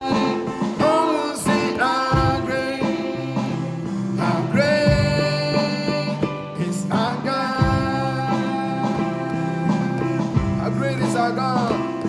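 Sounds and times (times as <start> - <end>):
band playing worship music: 0.0 - 12.0
person singing long notes: 0.0 - 12.0.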